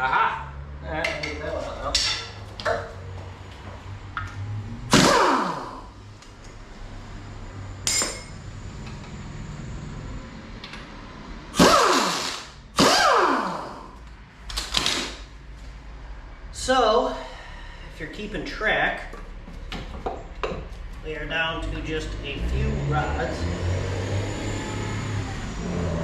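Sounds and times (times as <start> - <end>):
power tool running: 4.9 - 5.9, 11.5 - 13.9
light metal clink: 7.8 - 8.4.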